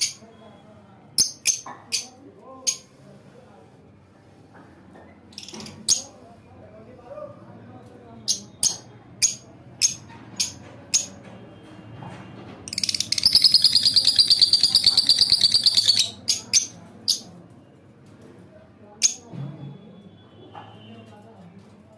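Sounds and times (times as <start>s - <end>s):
bird rattling chatter: 12.7s - 16.4s
bird chirping: 12.7s - 17.3s.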